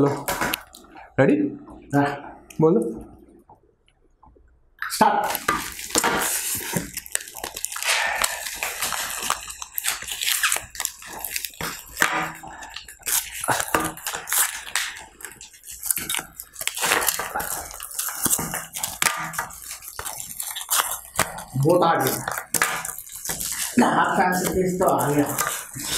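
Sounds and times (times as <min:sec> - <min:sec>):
biting and chewing chocolate: 0:05.2 - 0:25.9
plastic wrappers crinkling: 0:05.2 - 0:25.9.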